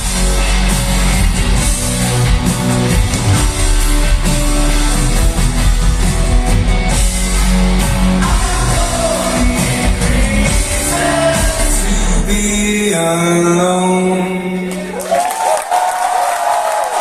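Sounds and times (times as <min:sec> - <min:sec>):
deep bass: 0:00.0 - 0:13.5
drums: 0:00.0 - 0:13.5
rock band playing: 0:00.0 - 0:14.8.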